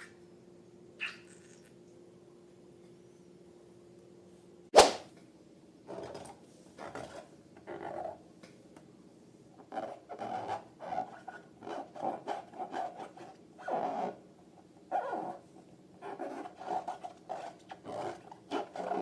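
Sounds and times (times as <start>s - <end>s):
balloon snapping: 4.8s - 5.1s.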